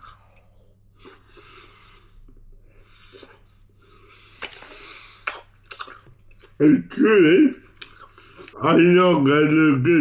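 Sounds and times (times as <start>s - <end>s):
breathy breathing: 0.0s - 5.3s
person chewing candy: 2.2s - 3.5s, 4.3s - 6.6s, 7.7s - 8.6s.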